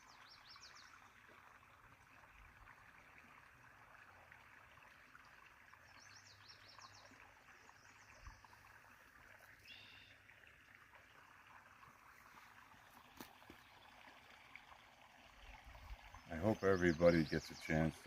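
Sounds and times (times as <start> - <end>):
songbirds singing: 0.0 - 1.7, 5.6 - 10.3, 15.4 - 18.0
running water: 0.0 - 18.0.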